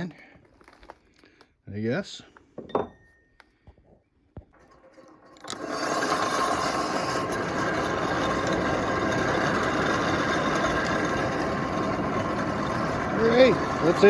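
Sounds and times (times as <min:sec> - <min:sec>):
hand-cranked blower whirring: 0:04.6 - 0:14.0.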